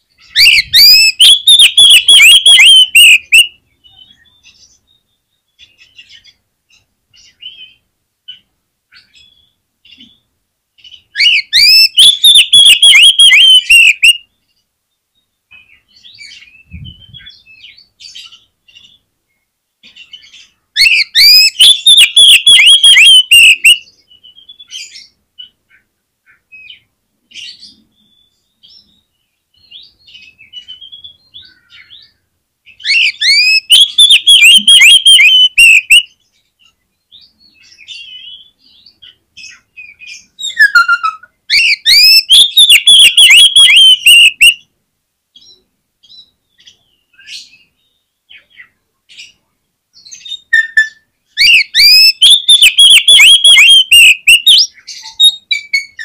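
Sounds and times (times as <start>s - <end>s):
bird twittering: 0.2s - 4.5s, 11.1s - 14.3s, 20.1s - 23.9s, 32.8s - 36.1s, 37.6s - 44.6s, 50.0s - 56.0s
rapid down-slurred bird whistles: 0.3s - 3.6s, 11.2s - 14.2s, 20.8s - 23.8s, 32.8s - 36.1s, 40.4s - 44.6s, 50.2s - 56.0s.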